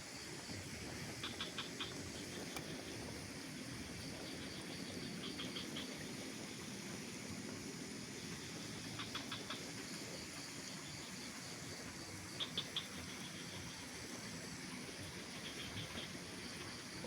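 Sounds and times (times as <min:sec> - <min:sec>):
steady outdoor hiss: 0:00.0 - 0:17.0.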